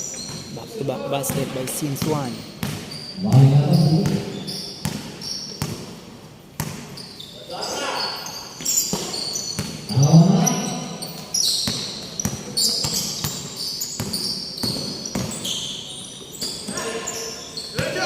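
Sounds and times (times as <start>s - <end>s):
sneakers squeaking on court: 0.0s - 18.0s
basketball bouncing on gym floor: 1.2s - 6.0s, 6.6s - 7.1s, 8.6s - 9.9s, 10.6s - 15.5s.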